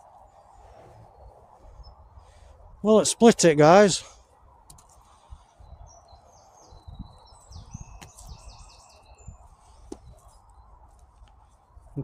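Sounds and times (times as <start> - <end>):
songbird warbling: 5.6 - 10.7.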